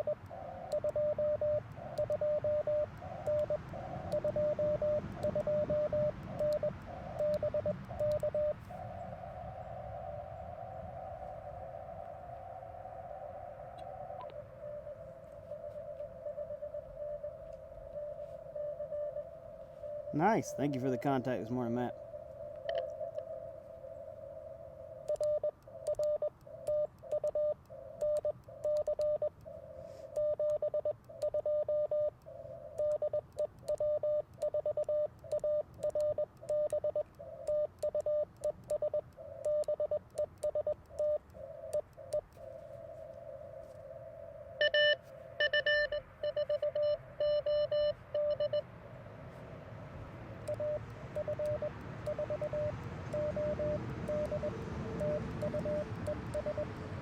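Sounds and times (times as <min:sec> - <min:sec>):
morse code tone: 0:00.0 - 0:08.6, 0:14.6 - 0:21.9, 0:25.1 - 0:29.3, 0:30.2 - 0:32.1, 0:32.8 - 0:41.8, 0:44.6 - 0:48.7, 0:50.5 - 0:56.8.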